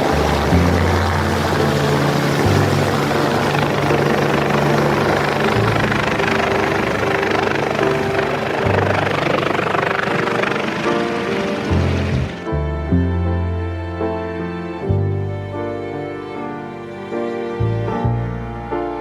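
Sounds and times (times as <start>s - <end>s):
helicopter rotor and engine: 0.0s - 12.4s
slow background music: 0.0s - 19.0s.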